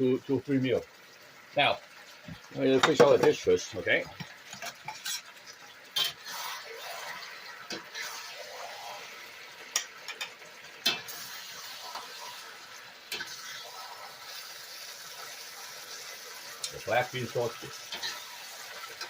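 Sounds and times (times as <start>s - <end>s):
sizzling hiss: 0.0s - 19.0s
metal spatula scraping in a wok: 4.5s - 5.4s, 6.0s - 9.0s, 17.9s - 19.0s.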